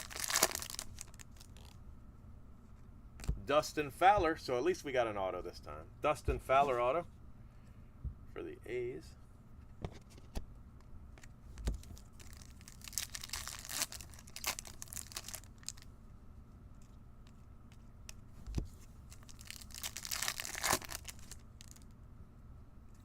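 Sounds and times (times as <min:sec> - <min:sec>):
wrappers tearing and crinkling: 0:00.0 - 0:01.8, 0:11.9 - 0:15.8, 0:19.1 - 0:21.9.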